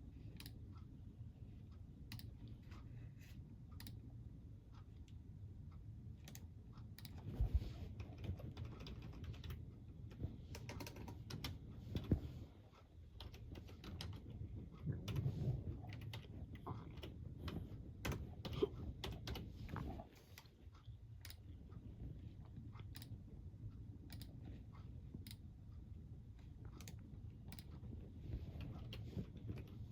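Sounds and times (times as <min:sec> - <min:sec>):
stomach rumble: 0:14.4 - 0:20.2.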